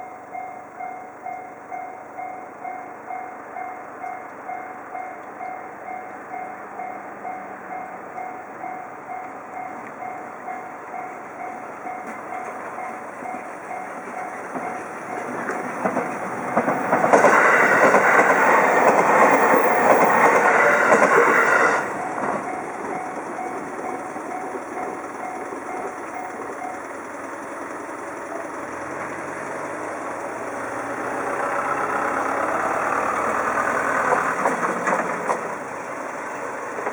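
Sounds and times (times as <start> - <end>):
railroad crossing bell ringing: 0.0 - 36.9
train passing on rails: 0.0 - 36.9
vehicle engine speeding up: 28.5 - 34.5.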